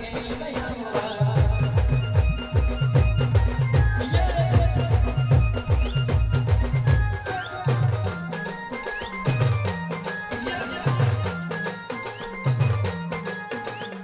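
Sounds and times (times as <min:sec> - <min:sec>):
deep drum beats: 0:00.0 - 0:08.5.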